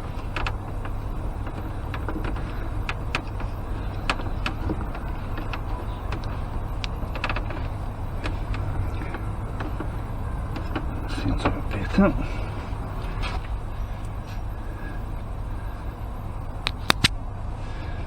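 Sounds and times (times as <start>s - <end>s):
plastic parts clicking: 0.0s - 11.6s, 16.6s - 17.2s.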